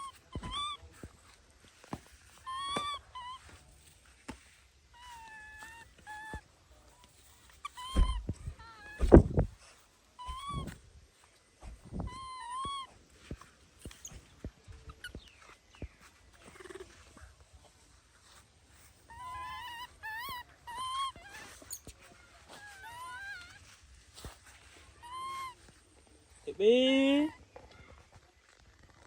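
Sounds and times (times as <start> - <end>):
baby monkey calling: 2.4 - 3.4, 7.6 - 9.3, 10.2 - 10.8, 12.1 - 12.9, 19.1 - 21.8, 22.6 - 23.7, 24.9 - 25.6.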